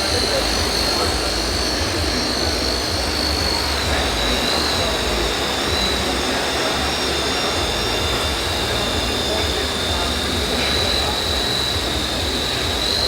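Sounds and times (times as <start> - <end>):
small electric motor whine: 0.0 - 13.0.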